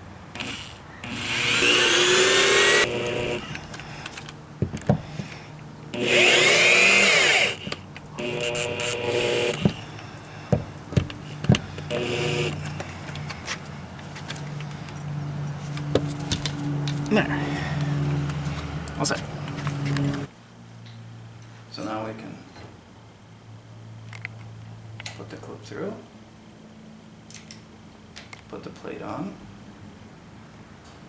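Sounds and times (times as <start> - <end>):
cordless drill driving screws: 0.4 - 15.0, 15.7 - 20.3
sharp clicks: 5.9 - 10.1.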